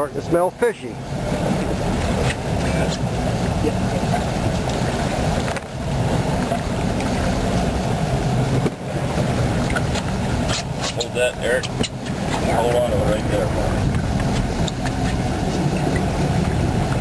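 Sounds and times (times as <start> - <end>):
motorboat engine rumbling: 0.0 - 17.0.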